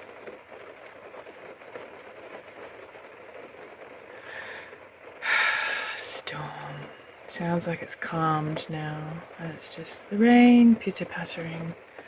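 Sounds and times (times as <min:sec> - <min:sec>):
rain pattering on a roof: 0:00.0 - 0:12.0.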